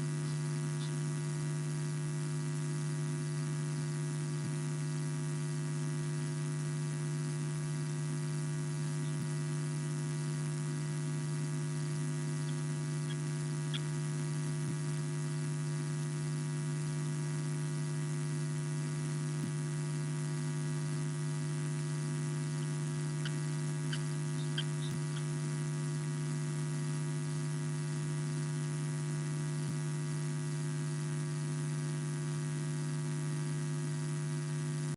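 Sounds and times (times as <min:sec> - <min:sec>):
faint high chirps: 0:00.0 - 0:01.0, 0:22.5 - 0:25.3
constant hiss: 0:00.0 - 0:01.2, 0:22.4 - 0:25.6
electrical hum: 0:00.0 - 0:34.9.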